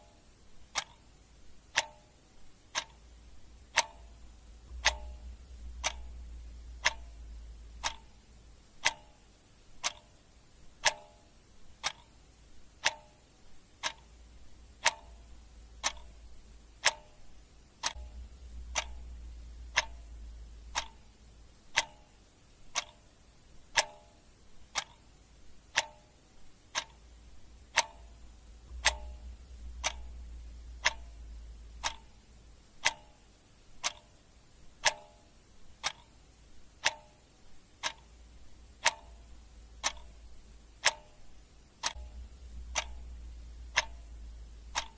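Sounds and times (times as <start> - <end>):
clock ticking: 0.0 - 44.9.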